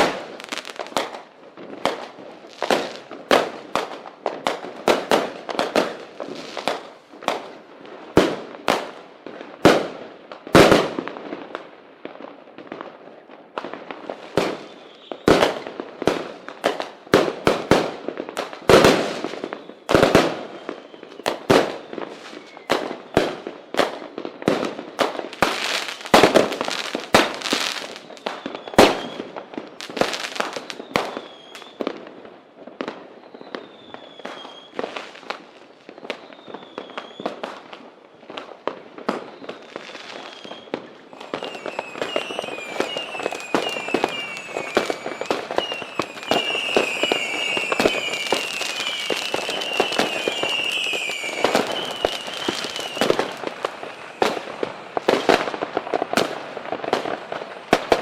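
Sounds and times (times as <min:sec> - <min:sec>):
firecracker bangs and pops: 0:00.0 - 0:32.2, 0:32.8 - 0:58.0
faint high whistles: 0:14.6 - 0:15.3, 0:20.5 - 0:22.8, 0:28.1 - 0:29.3, 0:30.7 - 0:31.9, 0:33.1 - 0:34.9, 0:36.0 - 0:37.3, 0:39.2 - 0:54.4.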